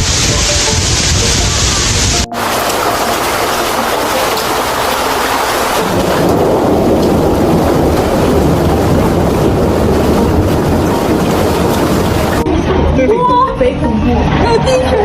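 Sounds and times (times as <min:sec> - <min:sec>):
heavy rain: 0:00.0 - 0:12.4.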